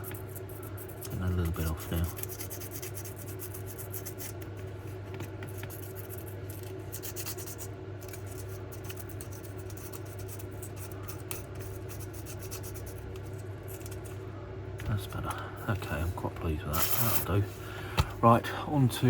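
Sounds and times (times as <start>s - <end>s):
steady low hum: 0.0s - 19.0s
emery cloth scratching copper: 16.7s - 17.6s.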